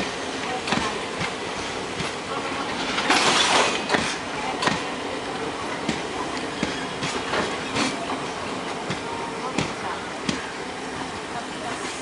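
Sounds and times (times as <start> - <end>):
train wheels clacking over rail joints: 0.0 - 10.5
rush of train noise: 0.0 - 12.0
train rumble: 0.0 - 12.0.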